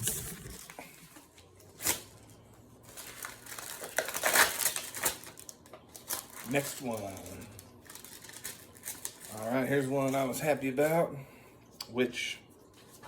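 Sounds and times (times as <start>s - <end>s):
packaging crinkling and tearing: 0.0s - 10.3s.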